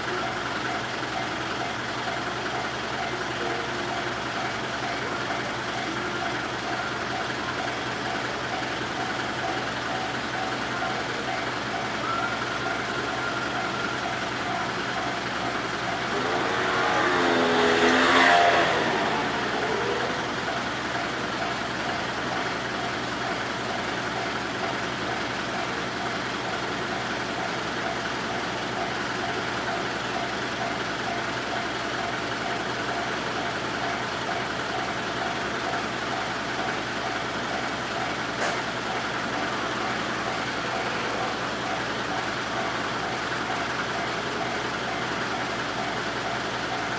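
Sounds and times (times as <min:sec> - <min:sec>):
level-crossing warning bell: 0:00.0 - 0:46.9
vehicle passing by: 0:16.2 - 0:20.2.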